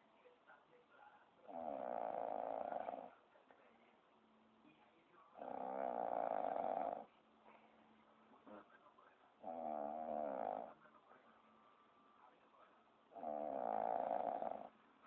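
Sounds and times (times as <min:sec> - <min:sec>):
person snoring: 0:01.5 - 0:03.1, 0:05.4 - 0:07.1, 0:09.4 - 0:10.8, 0:13.2 - 0:14.7.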